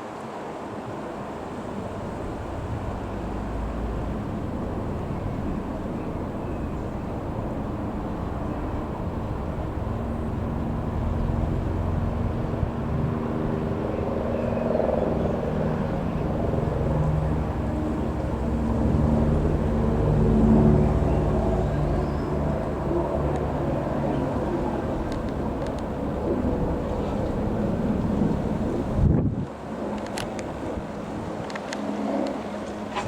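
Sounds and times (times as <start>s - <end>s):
helicopter rumble: 0.9s - 33.0s
humming tone: 1.2s - 29.0s.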